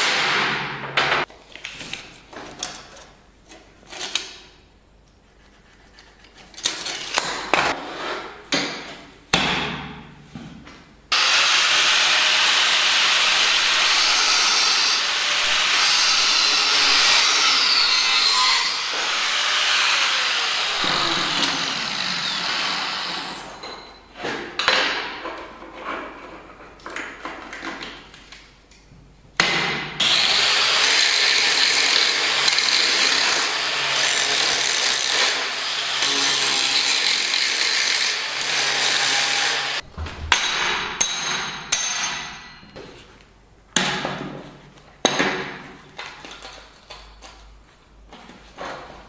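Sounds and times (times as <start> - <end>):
power tool cutting steel: 11.1 - 23.8, 30.0 - 39.8
sharp metal clanks: 39.8 - 42.8.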